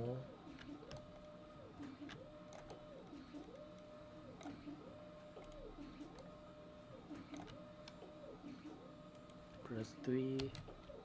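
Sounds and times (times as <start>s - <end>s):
mouse and keyboard clicks: 5.4s - 6.3s.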